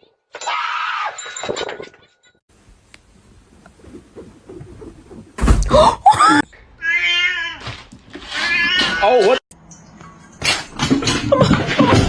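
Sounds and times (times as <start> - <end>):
cat meowing: 6.8 - 7.7, 8.4 - 9.2.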